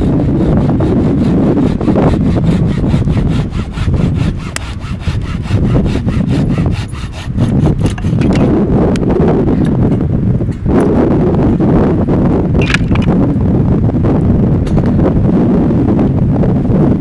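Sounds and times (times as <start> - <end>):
hand saw cutting wood: 0.0 - 8.5
wind buffeting microphone: 0.0 - 17.0.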